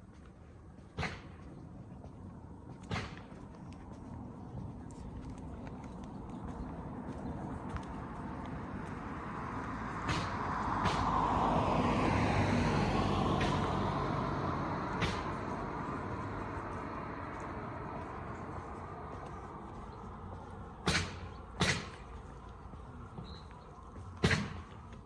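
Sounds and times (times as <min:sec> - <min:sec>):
car driving past: 0:06.4 - 0:25.0.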